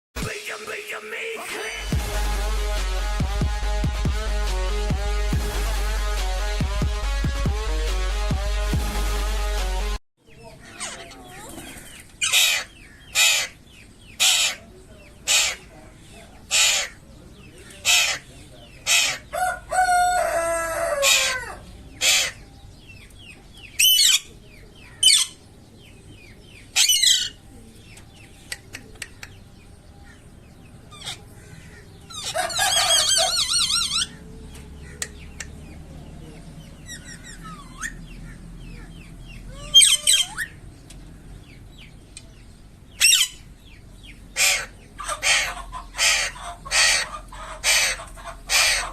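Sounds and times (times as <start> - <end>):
parrot squawking: 10.6 - 13.6, 14.2 - 15.7, 16.5 - 17.0, 17.8 - 22.4, 23.8 - 24.3, 25.0 - 25.4, 26.8 - 27.4, 30.9 - 34.2, 36.8 - 40.6, 43.0 - 43.5, 44.4 - 48.9.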